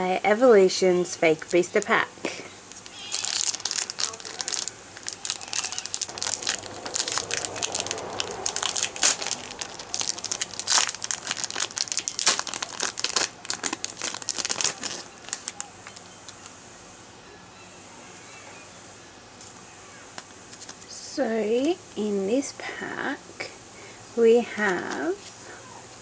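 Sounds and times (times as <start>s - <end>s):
plastic wrapper crinkling and tearing: 2.7s - 16.6s.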